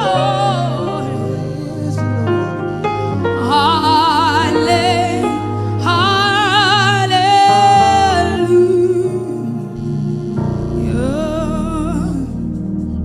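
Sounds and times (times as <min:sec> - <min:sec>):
person singing with vibrato: 0:00.0 - 0:12.6
sustained backing notes: 0:00.0 - 0:13.0.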